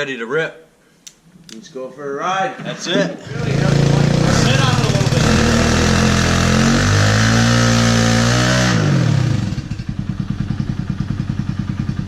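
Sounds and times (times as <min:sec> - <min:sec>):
motorcycle engine revving and idling: 0:03.2 - 0:12.0.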